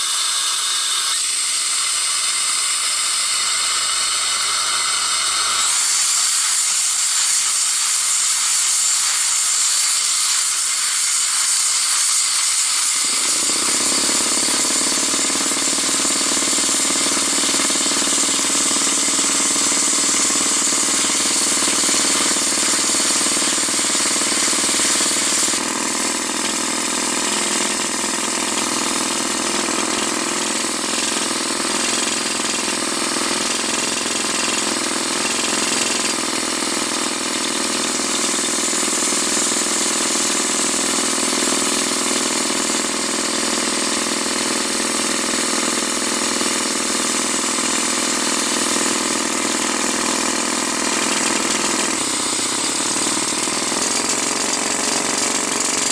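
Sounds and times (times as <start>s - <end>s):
earth auger engine running under load: 13.0s - 55.9s.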